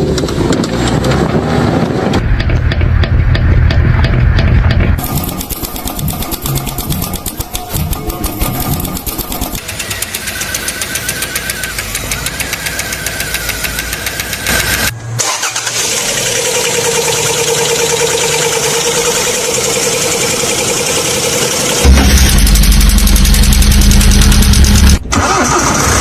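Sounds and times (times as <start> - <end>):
car engine running: 2.1 - 14.9, 16.0 - 25.0
steady whine: 2.2 - 14.9, 16.4 - 25.0
fast even ticking: 2.4 - 14.9, 17.0 - 25.0.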